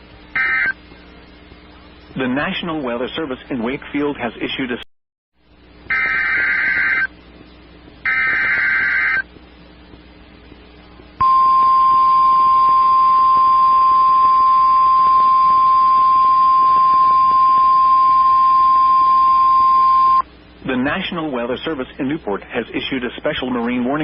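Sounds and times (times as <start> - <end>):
steady warning alarm tone: 5.9 - 7.1, 8.1 - 9.2.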